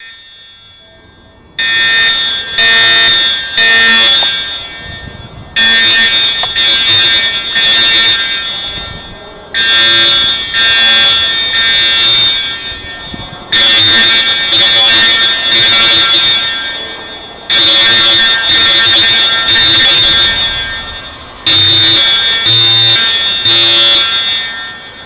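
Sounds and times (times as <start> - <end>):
fire alarm horn blasts: 0.0 - 25.0.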